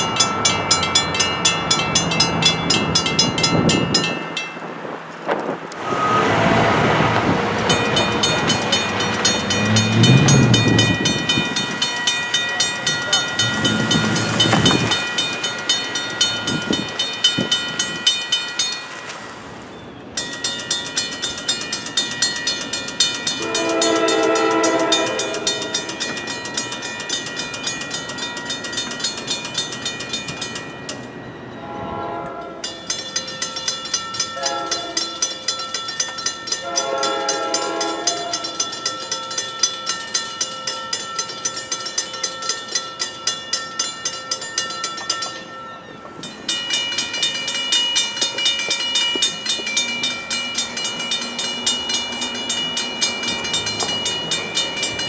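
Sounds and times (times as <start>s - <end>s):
railroad crossing bells ringing: 0.0s - 55.0s
train horn blasts: 5.8s - 11.8s, 23.4s - 25.9s, 31.6s - 32.7s, 34.4s - 35.1s, 36.6s - 38.6s.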